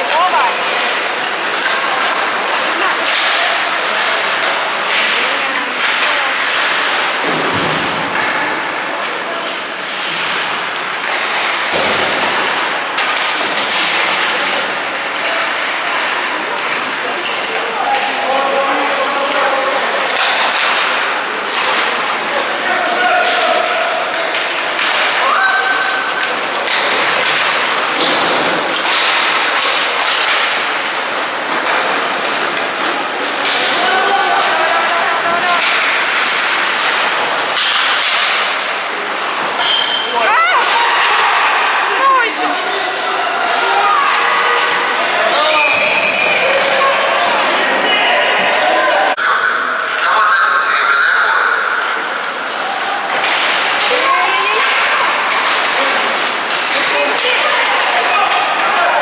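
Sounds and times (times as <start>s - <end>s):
skate blades scraping ice: 0.0s - 7.3s, 8.1s - 17.6s, 18.7s - 40.8s, 51.9s - 59.0s
hockey sticks and puck knocks: 0.1s - 41.5s, 51.8s - 59.0s.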